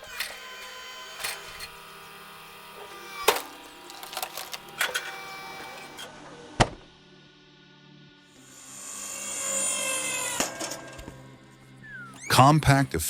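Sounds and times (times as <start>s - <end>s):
wood splitter motor humming: 0.0s - 6.1s
wood knocking and cracking: 3.3s - 4.8s.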